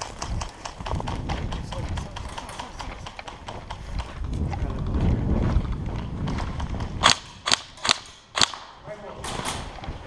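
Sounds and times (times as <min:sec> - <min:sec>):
wind buffeting microphone: 0:00.0 - 0:10.0
airsoft gun shots: 0:07.0 - 0:09.7.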